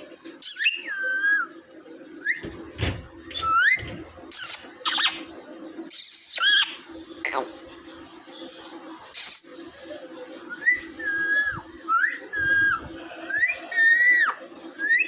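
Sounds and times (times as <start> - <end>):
parrot whistling: 10.5 - 15.0.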